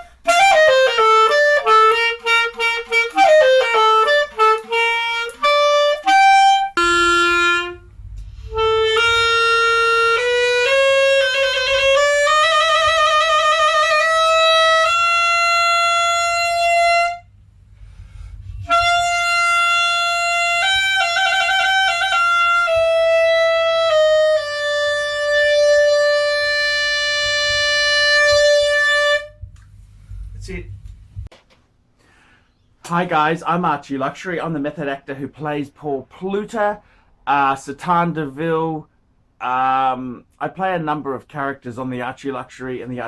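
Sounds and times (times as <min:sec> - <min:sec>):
woodwind melody with trills: 0:00.0 - 0:17.3, 0:18.4 - 0:29.4.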